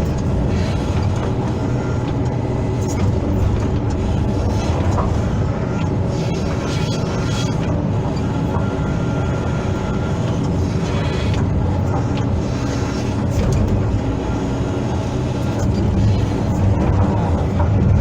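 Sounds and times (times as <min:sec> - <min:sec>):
excavator diesel engine running: 0:00.0 - 0:18.0.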